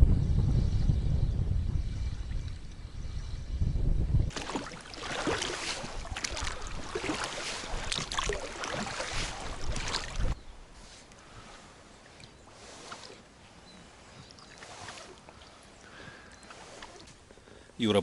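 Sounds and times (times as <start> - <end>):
wind rumbling on microphone: 0.0 - 11.7
rowing boat splashing: 4.3 - 17.6.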